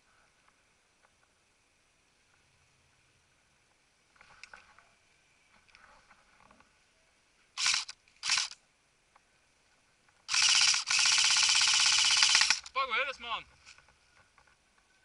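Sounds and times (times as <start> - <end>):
airsoft gun firing bursts: 7.6 - 8.6, 10.3 - 12.7.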